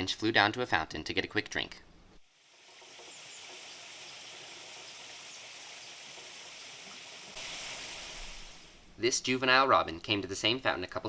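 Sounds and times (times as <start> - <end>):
fountain water splashing: 2.8 - 8.8.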